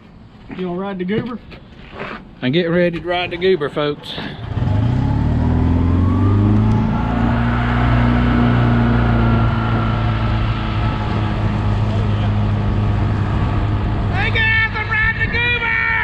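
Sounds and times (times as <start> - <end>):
golf cart motor driving off: 4.4 - 14.2.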